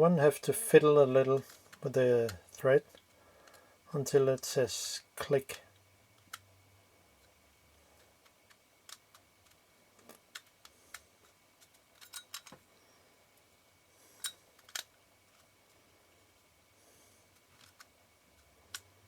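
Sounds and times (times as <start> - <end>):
small metal parts clicking: 8.2 - 12.6, 14.2 - 15.5, 17.4 - 18.9.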